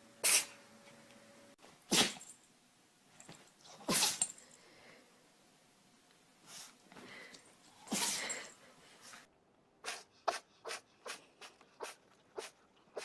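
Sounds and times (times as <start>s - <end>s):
animal sneezing: 0.2s - 0.6s, 1.7s - 2.4s, 3.2s - 4.5s, 6.4s - 13.0s
short sharp sneezes: 0.2s - 0.6s, 1.8s - 2.3s, 3.7s - 4.4s, 7.9s - 8.6s, 9.8s - 13.0s.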